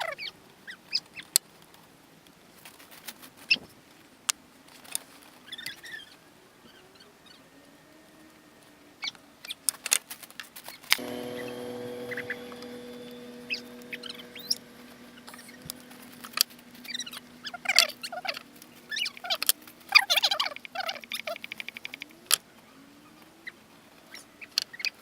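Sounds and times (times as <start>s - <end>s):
struck metal piece ringing: 11.0s - 19.3s.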